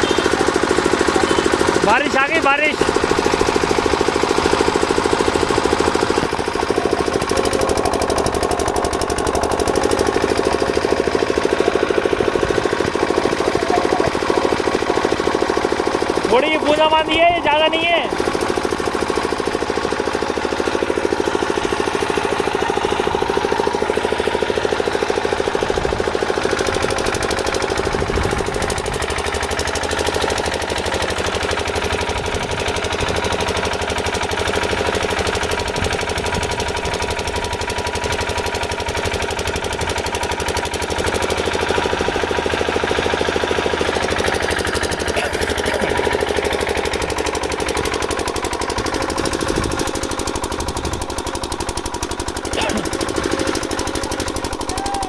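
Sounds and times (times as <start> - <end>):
machine rattling: 0.0 - 55.0.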